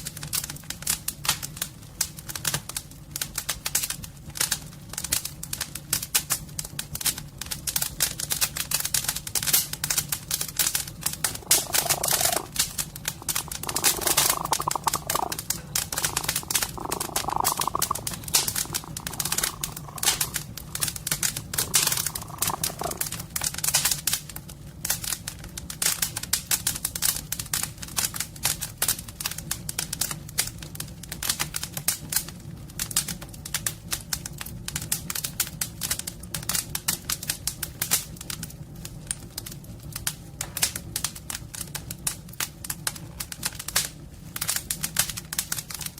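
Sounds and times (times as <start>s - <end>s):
wood fire crackling: 0.0s - 45.9s
cat purring: 11.0s - 23.5s.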